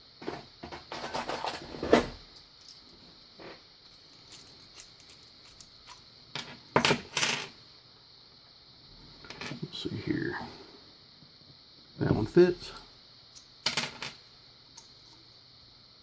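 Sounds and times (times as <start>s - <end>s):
tools clattering: 0.7s - 2.9s, 3.9s - 7.4s
metal hand tools clinking: 4.2s - 6.0s.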